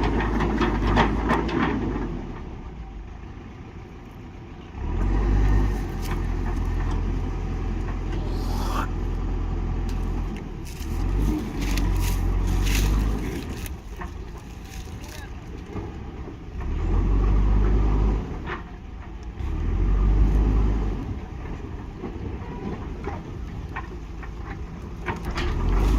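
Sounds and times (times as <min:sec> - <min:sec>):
diesel engine under load: 0:00.0 - 0:25.9
digger scraping: 0:10.0 - 0:15.0.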